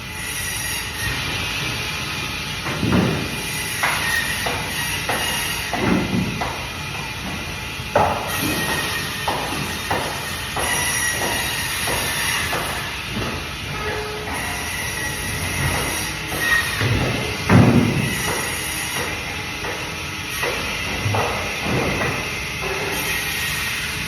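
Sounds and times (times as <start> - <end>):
bandsaw cutting fish: 2.8 - 6.7, 8.0 - 13.1
knocks: 8.0 - 13.4.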